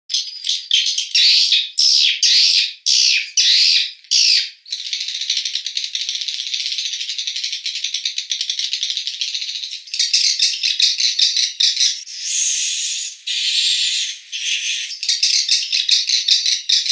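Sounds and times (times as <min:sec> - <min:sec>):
swiftlets chirping: 0:12.0 - 0:15.0.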